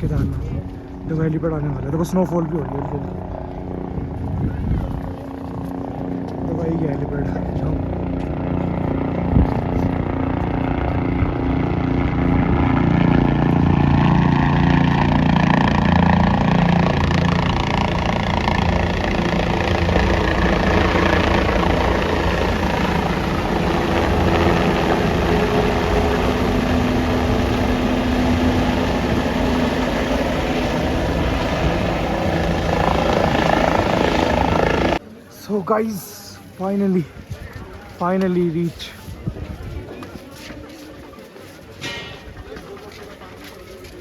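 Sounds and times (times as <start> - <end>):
helicopter rotor drone: 0.0 - 35.0.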